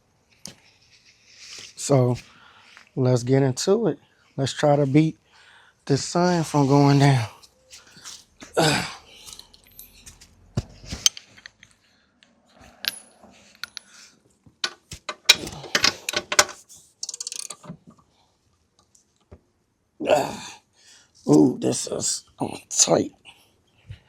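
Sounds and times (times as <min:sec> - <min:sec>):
metal tools clinking: 0:09.1 - 0:10.3, 0:12.8 - 0:17.7
ratchet clicks: 0:17.0 - 0:17.7.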